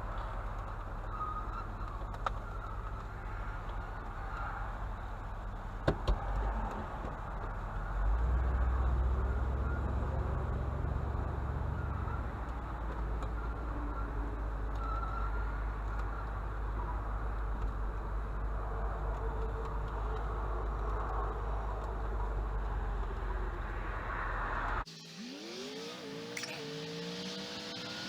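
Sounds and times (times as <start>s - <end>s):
vehicle engine and road rumble: 0.0s - 25.0s
engine revving up: 24.6s - 28.0s.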